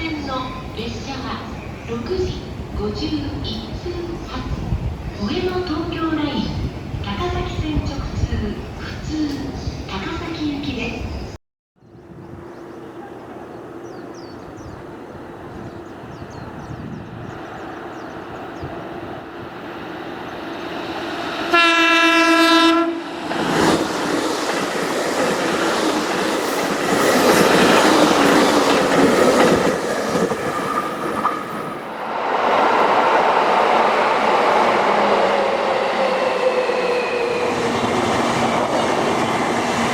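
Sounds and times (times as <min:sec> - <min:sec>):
electric train approaching: 0:00.0 - 0:39.9
train horn blast: 0:21.4 - 0:23.1.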